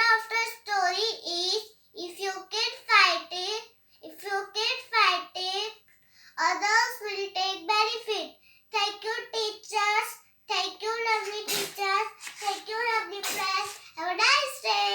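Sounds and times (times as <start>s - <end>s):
girl chanting sing-song phrases: 10.7s - 14.9s.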